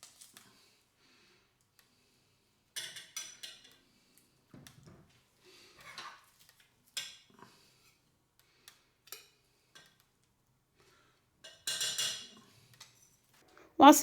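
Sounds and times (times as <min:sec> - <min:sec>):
utensils clinking against dishes: 0:02.8 - 0:03.8, 0:11.4 - 0:13.1.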